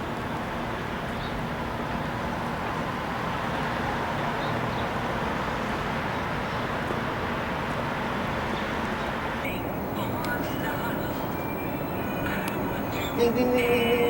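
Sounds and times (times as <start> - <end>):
vehicle rushing noise: 5.0 - 14.0
faint steady hum: 8.9 - 14.0.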